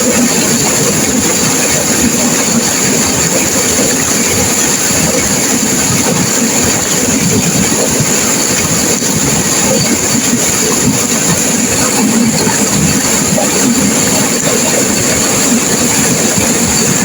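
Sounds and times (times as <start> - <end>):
river water rushing: 0.0 - 17.0.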